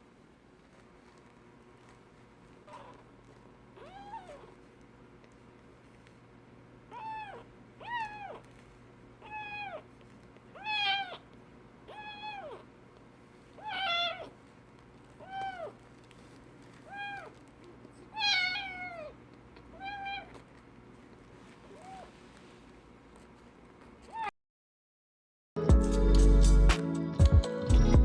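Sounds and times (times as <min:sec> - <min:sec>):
kitten mewing: 0:02.6 - 0:04.7, 0:06.9 - 0:12.8, 0:13.6 - 0:14.4, 0:15.1 - 0:15.9, 0:16.8 - 0:20.7, 0:21.6 - 0:22.2, 0:24.0 - 0:24.3.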